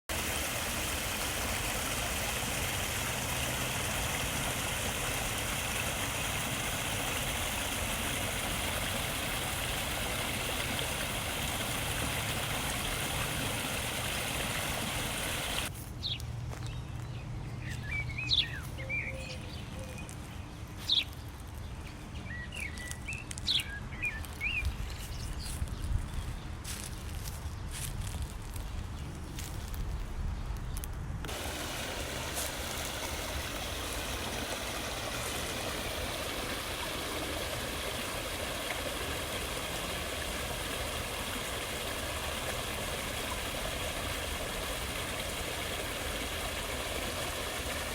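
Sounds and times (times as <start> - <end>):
stream water rushing: 0.0 - 15.7, 31.3 - 47.9
birds chirping: 14.7 - 26.5.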